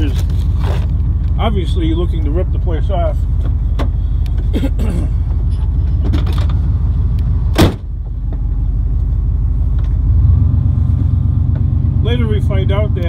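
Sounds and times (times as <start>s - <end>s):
vehicle engine droning: 0.0s - 13.0s
sharp thump: 7.5s - 7.9s.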